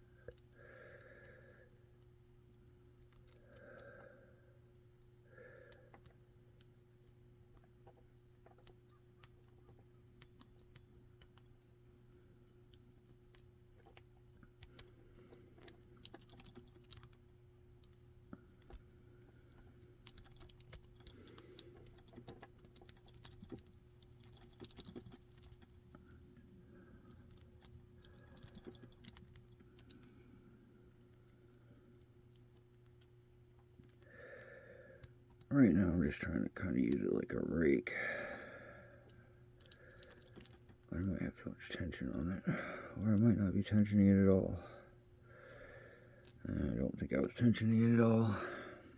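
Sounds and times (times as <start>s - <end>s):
lock pick clicking and scratching: 1.9s - 3.6s, 5.7s - 30.2s, 30.8s - 34.1s, 35.0s - 35.5s, 39.0s - 40.9s.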